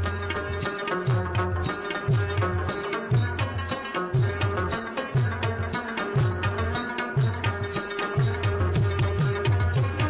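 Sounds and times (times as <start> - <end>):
sustained string melody: 0.0 - 10.0.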